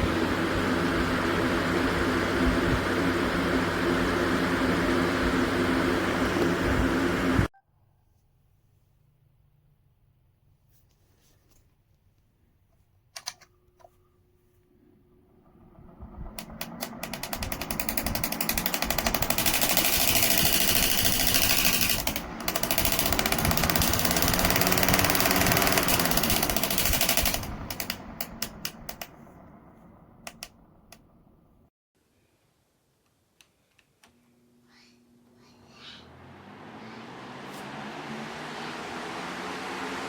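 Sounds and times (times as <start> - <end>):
box fan rattling: 15.3 - 31.0.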